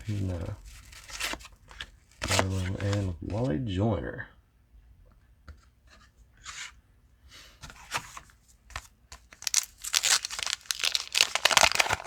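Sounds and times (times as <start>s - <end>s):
wax paper wrapper crinkling: 0.0s - 1.4s, 9.2s - 12.0s
cards being handled: 0.0s - 3.5s, 7.9s - 12.0s.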